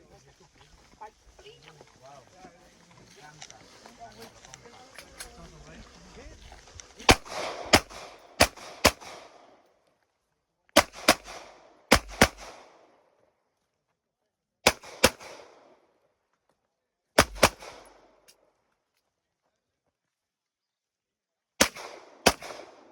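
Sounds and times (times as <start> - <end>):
gunshots with short echo: 7.0 - 9.5, 10.8 - 12.8, 17.2 - 18.0, 21.6 - 22.9.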